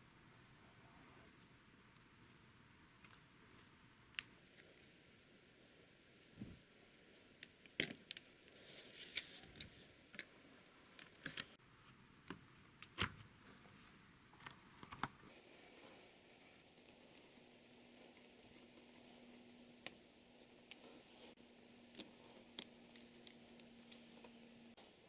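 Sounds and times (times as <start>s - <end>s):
rustling: 14.9s - 25.0s.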